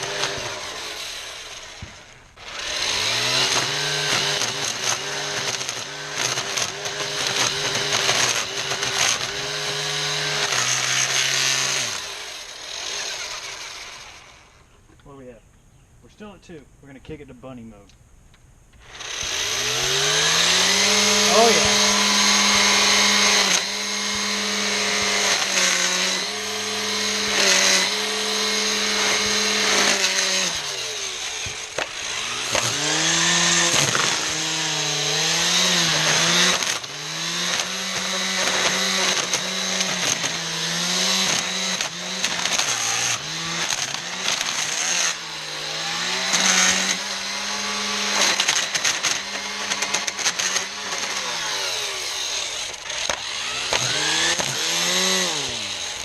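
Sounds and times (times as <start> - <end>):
string trimmer motor whine: 0.0 - 14.7, 18.8 - 56.0
trimmer line hissing: 18.8 - 56.0.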